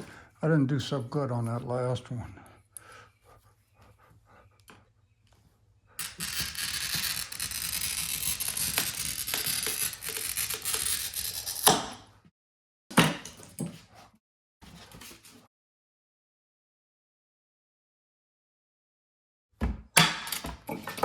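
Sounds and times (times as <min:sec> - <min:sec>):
glass cutter scratching glass: 0:06.0 - 0:12.0.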